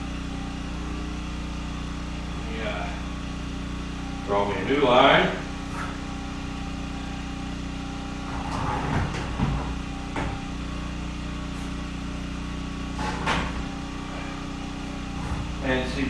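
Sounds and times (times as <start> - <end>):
portable generator humming: 0.0 - 16.0
lumber and tools knocking: 8.2 - 10.6, 12.9 - 16.0.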